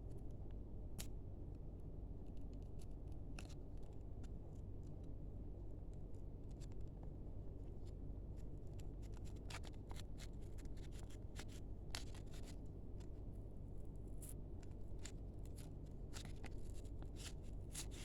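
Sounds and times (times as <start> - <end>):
steady low hum: 0.0 - 18.0
trading cards clicking and crinkling: 8.4 - 18.0.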